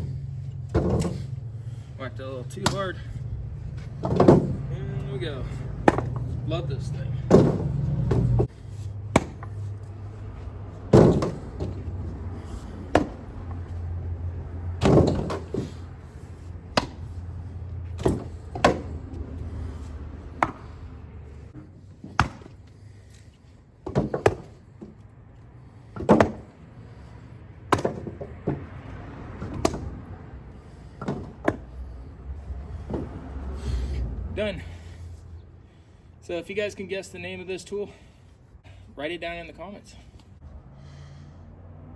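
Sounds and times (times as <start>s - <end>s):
wooden knocks of firewood: 0.0s - 1.8s, 3.7s - 4.7s, 5.7s - 6.5s, 7.1s - 9.8s, 10.8s - 13.8s, 14.8s - 15.8s, 16.7s - 17.2s, 17.9s - 19.7s, 20.4s - 20.8s, 21.6s - 23.0s, 23.8s - 25.1s, 25.9s - 26.6s, 27.7s - 28.8s, 29.4s - 30.1s, 30.8s - 32.0s, 32.7s - 33.3s.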